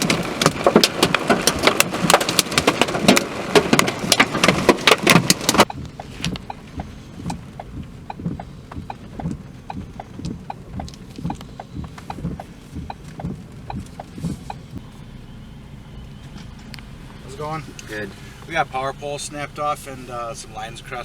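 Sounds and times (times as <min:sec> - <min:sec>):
rain pelting a car: 0:00.0 - 0:21.0
turn signal relay ticking: 0:00.0 - 0:21.0
low steady hum: 0:05.5 - 0:21.0.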